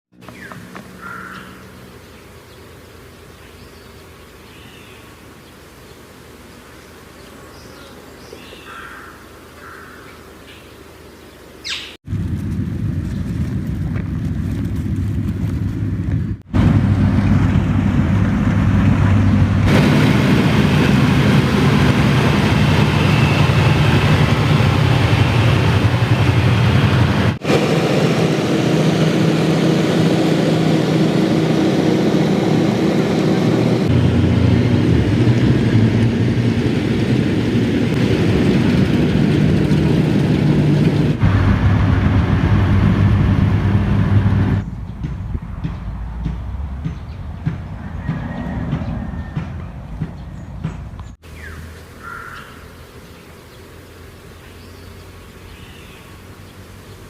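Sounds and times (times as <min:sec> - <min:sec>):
faint bird chirps: 0:06.6 - 0:12.0
loud engine running: 0:12.1 - 0:50.8.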